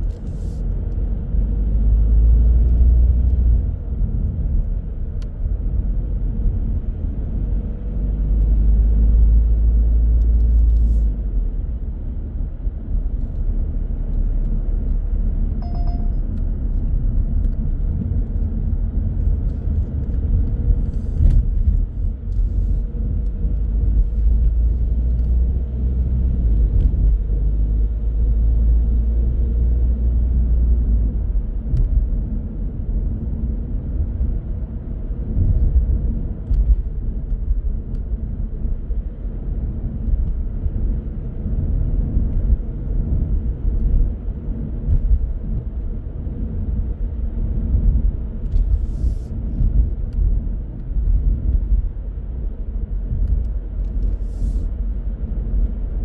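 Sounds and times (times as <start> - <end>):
car engine and road noise: 0.0 - 56.0
short beep: 15.6 - 16.4.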